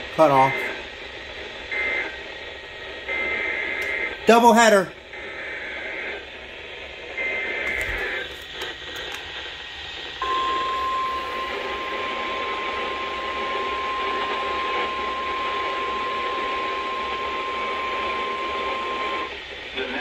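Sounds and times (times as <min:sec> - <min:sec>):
radio static: 0:00.0 - 0:09.5, 0:10.2 - 0:20.0
warning alarm tone: 0:00.2 - 0:00.8, 0:10.2 - 0:19.3.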